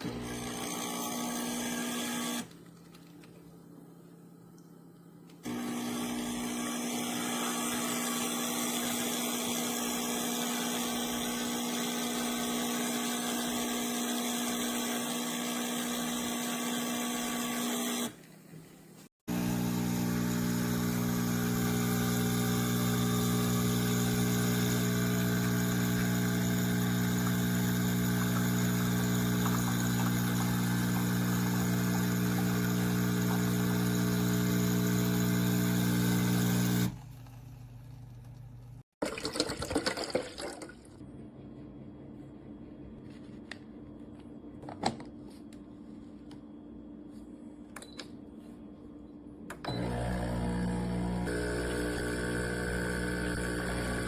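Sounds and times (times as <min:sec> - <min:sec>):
espresso machine pump humming: 0:00.0 - 0:02.5, 0:05.5 - 0:18.2, 0:19.3 - 0:38.8, 0:49.6 - 0:54.0.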